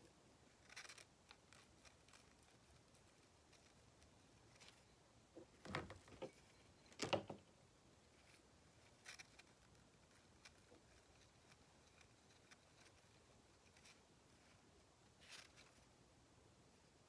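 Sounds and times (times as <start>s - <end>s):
light handling knocks and clatters: 5.4s - 7.5s.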